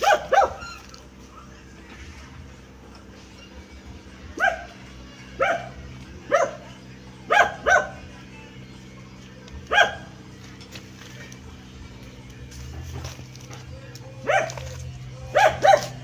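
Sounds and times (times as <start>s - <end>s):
dog barking: 0.0s - 0.8s, 4.3s - 8.1s, 9.7s - 10.2s, 14.2s - 16.0s.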